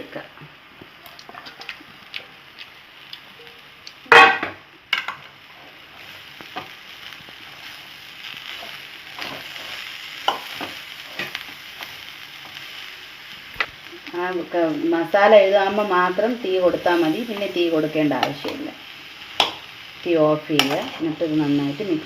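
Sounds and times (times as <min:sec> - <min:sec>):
low sizzle: 0:00.0 - 0:22.0.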